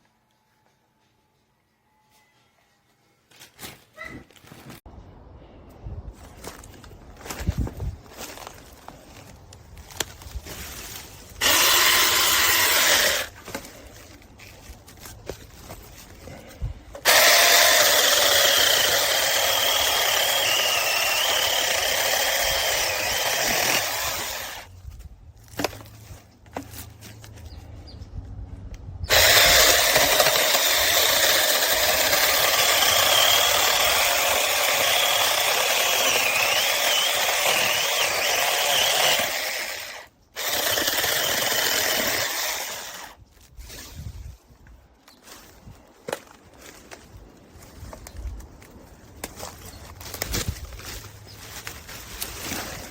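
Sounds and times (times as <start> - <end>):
electric chainsaw cutting wood: 11.4 - 13.3, 17.0 - 24.7, 29.1 - 43.2.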